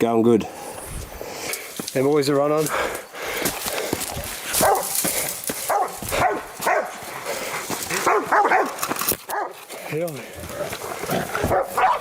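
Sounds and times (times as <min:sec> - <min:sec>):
dogs barking: 0:04.5 - 0:09.7, 0:10.5 - 0:12.0.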